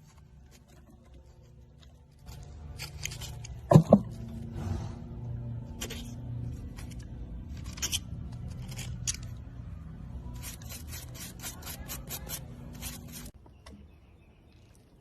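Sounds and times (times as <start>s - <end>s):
low hum: 0.0s - 11.1s.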